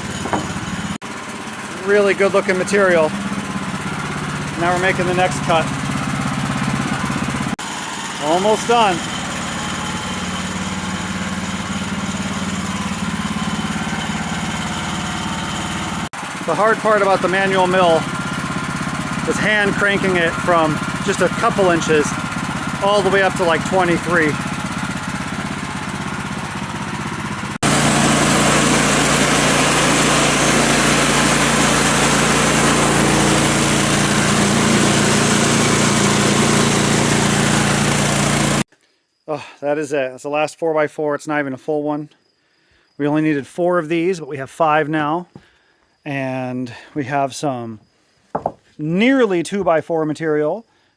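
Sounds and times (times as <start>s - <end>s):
sawmill gas engine sawing log: 0.0s - 38.7s.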